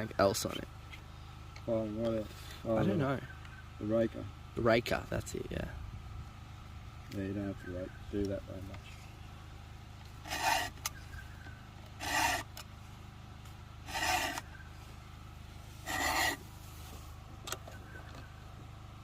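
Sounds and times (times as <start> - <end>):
steady low hum: 0.0 - 19.0
file rasping on chainsaw chain: 10.2 - 10.9, 12.0 - 12.6, 13.8 - 14.5, 15.8 - 16.4.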